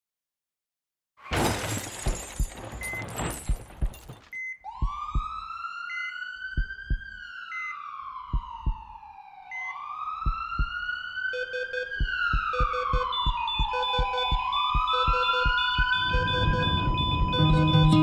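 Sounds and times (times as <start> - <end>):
siren wailing: 4.6 - 18.0
low heartbeat-like thumps: 4.8 - 5.4, 6.5 - 7.1, 8.3 - 8.9, 10.2 - 10.8, 12.0 - 17.8
short high beeps: 14.9 - 18.0.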